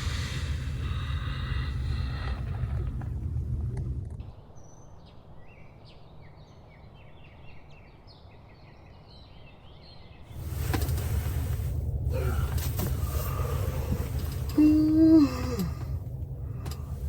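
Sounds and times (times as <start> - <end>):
low rumble: 0.0 - 4.4, 10.4 - 17.0
small birds chirping: 4.2 - 17.0.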